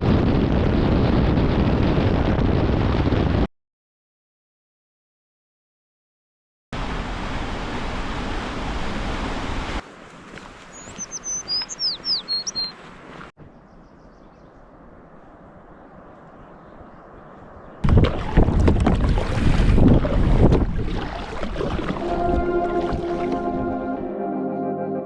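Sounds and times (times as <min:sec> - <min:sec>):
bird chirping: 0:10.7 - 0:12.8, 0:13.4 - 0:17.8.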